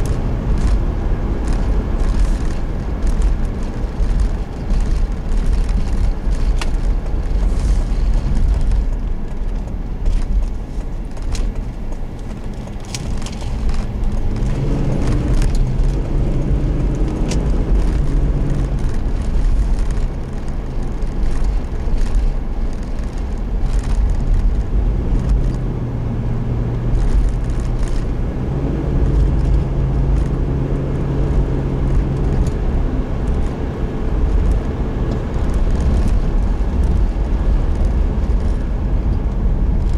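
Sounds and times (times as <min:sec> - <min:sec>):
vehicle engine and road rumble: 0:00.0 - 0:39.9
engine hum rising in pitch: 0:13.5 - 0:21.0, 0:24.1 - 0:39.8.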